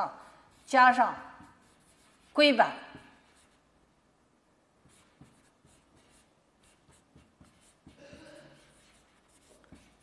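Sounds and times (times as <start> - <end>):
pen scratching handwriting: 4.9 - 10.0.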